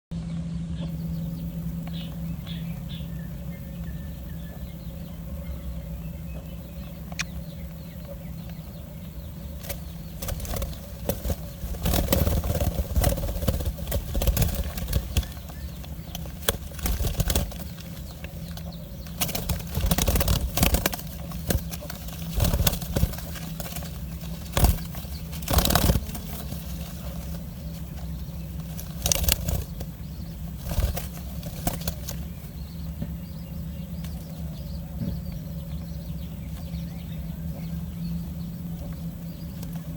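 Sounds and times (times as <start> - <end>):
steady low hum: 0.1 - 39.9
bird wings rustling and flapping: 0.9 - 33.2
sharp clicks: 6.4 - 8.6, 28.6 - 29.9.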